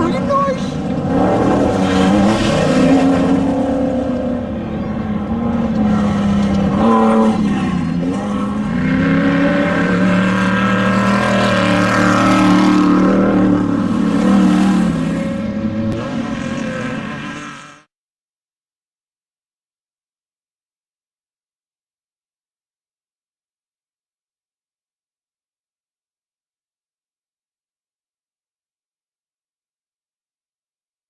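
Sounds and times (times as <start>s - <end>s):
race vehicle engine revving: 0.0s - 17.9s.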